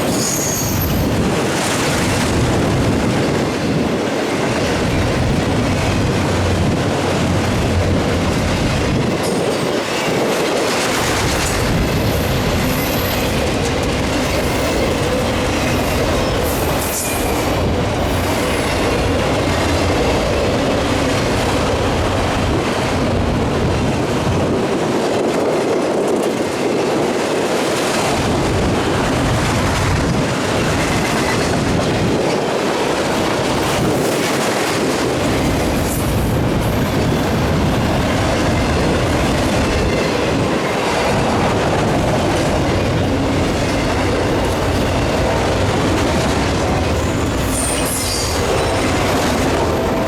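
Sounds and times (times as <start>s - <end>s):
train wheels squealing: 0.0s - 1.2s, 11.1s - 13.5s, 15.6s - 18.9s, 47.0s - 50.0s.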